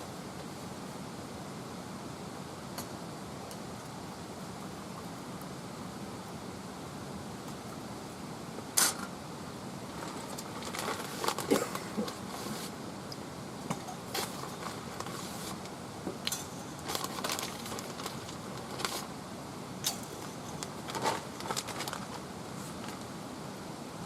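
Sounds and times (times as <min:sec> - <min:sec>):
wood fire crackling: 0:14.0 - 0:19.2.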